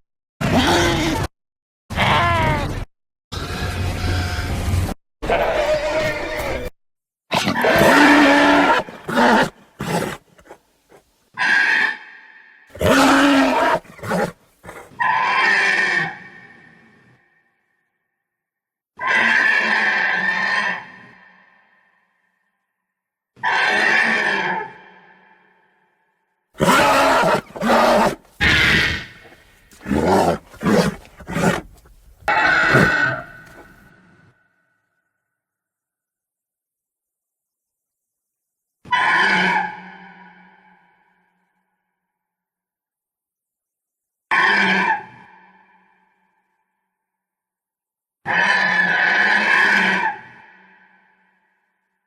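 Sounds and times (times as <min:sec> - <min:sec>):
creature roaring and grunting: 0:00.4 - 0:01.3, 0:07.4 - 0:10.6, 0:12.8 - 0:14.9, 0:26.6 - 0:33.8.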